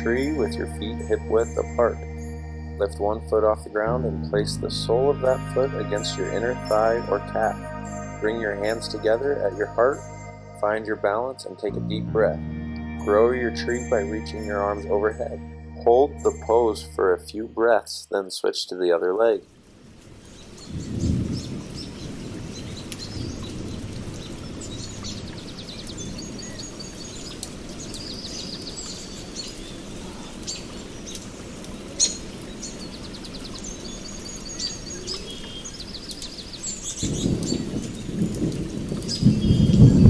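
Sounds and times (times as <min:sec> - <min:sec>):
birds chirping: 0:00.0 - 0:18.1, 0:20.4 - 0:40.0
steady rain: 0:19.4 - 0:40.0
thunder rumbling: 0:20.7 - 0:24.9, 0:37.0 - 0:40.0.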